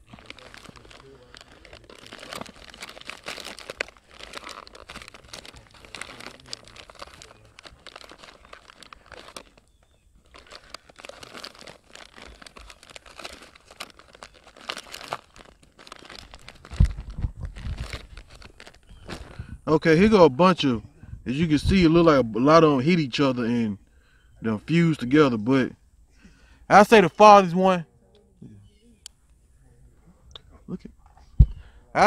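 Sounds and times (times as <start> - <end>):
paper rustling and tearing: 0.0 - 9.6.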